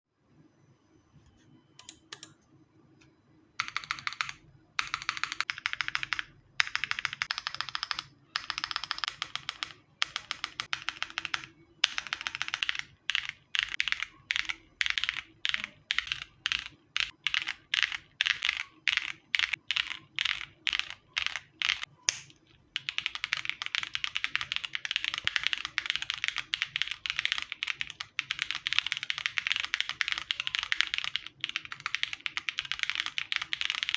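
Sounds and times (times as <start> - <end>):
mechanical keyboard typing: 1.8 - 2.3, 3.6 - 33.9.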